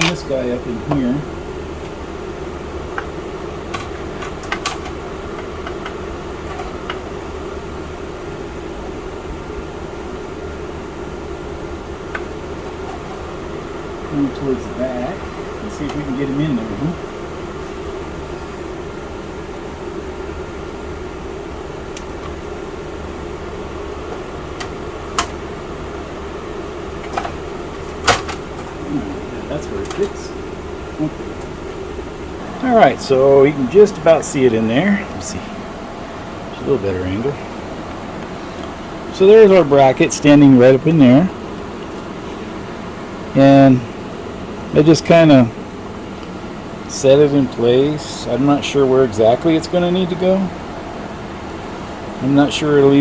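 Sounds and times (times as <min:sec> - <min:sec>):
steady mechanical hum: 0:00.0 - 0:53.0.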